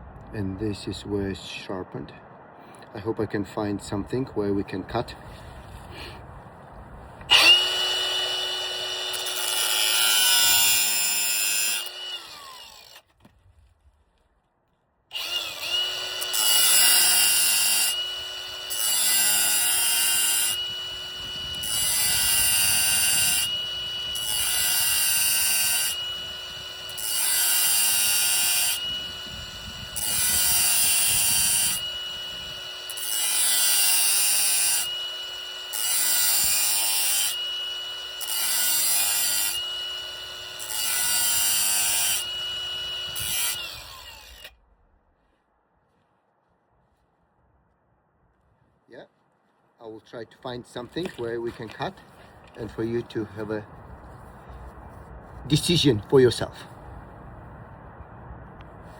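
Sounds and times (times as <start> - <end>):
power drill cutting with hole saw: 7.3 - 13.0, 15.1 - 44.5.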